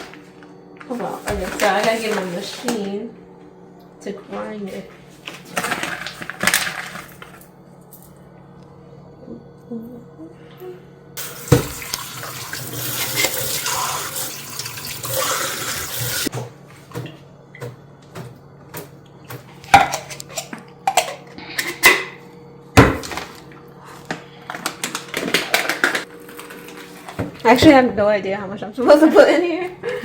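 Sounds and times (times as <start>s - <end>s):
water running from tap: 11.2s - 16.3s
kitchenware clattering: 19.7s - 22.2s.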